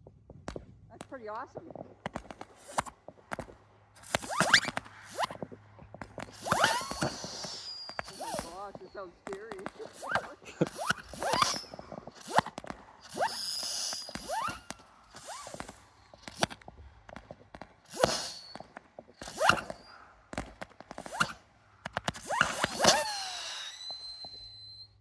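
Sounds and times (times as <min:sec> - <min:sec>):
fireworks bangs and pops: 0:00.0 - 0:25.0
fireworks crackling: 0:00.5 - 0:25.0
fireworks rising whistles: 0:01.1 - 0:25.0.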